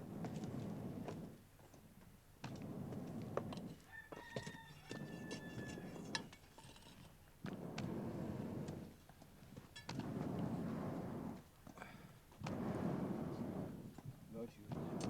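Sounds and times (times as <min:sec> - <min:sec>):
rooster crowing: 0:03.8 - 0:06.1.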